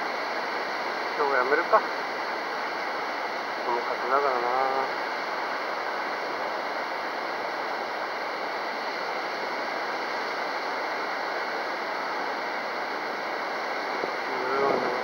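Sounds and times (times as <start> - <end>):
rushing wind: 13.6 - 15.0.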